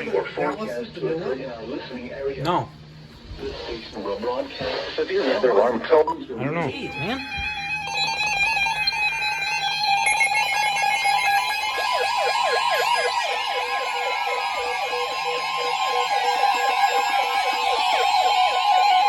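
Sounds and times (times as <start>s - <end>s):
siren-like warble: 6.7s - 19.0s.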